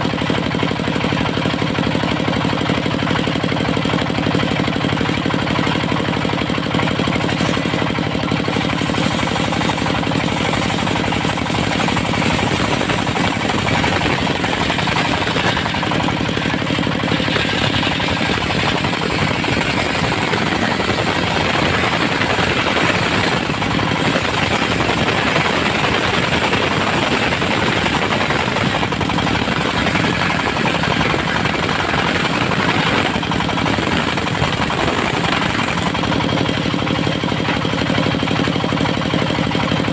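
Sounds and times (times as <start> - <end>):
diesel engine running: 0.0 - 39.9
saw blade cutting wood: 6.7 - 38.1.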